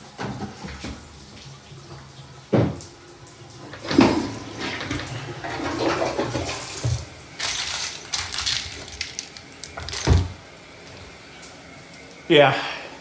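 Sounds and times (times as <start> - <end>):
water running from fixture: 0.0 - 13.0
clattering: 3.8 - 10.4.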